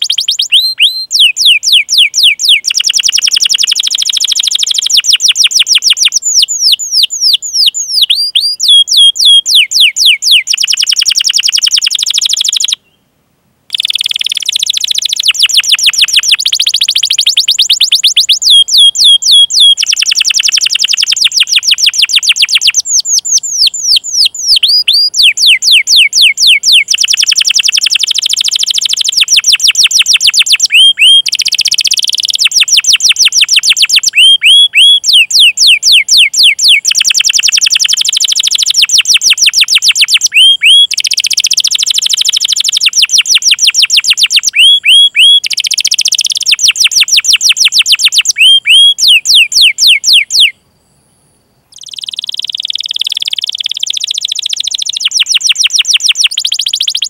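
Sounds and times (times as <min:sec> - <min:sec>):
sliding chirps: 0:00.0 - 0:12.8, 0:13.7 - 0:50.5, 0:51.7 - 0:57.0
canary singing trills: 0:00.0 - 0:13.0, 0:13.7 - 0:50.6, 0:51.7 - 0:57.0.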